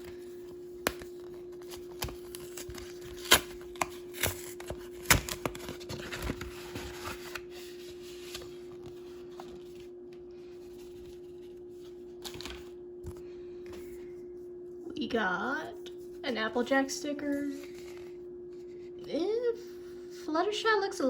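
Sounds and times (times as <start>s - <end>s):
faint steady hum: 0.0s - 21.0s
packaging rustling: 0.9s - 9.9s.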